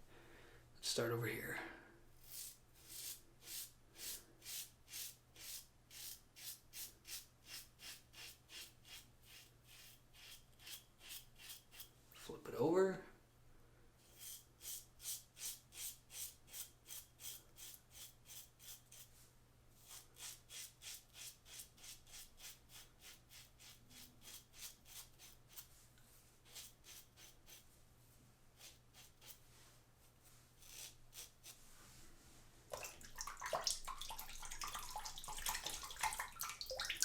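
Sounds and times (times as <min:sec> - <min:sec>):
razor scraping stubble: 0:26.4 - 0:27.6, 0:28.6 - 0:29.4, 0:30.6 - 0:31.6.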